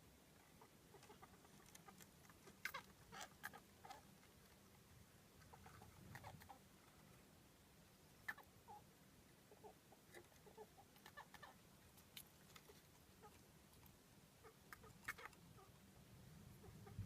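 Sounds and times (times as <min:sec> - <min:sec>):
mouse chirping: 0:00.6 - 0:04.1, 0:08.2 - 0:08.8, 0:14.4 - 0:15.8.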